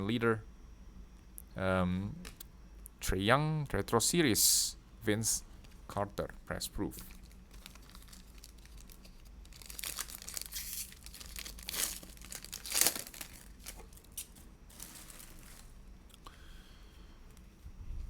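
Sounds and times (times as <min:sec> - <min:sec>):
foil wrapper tearing and crinkling: 0:07.0 - 0:15.8.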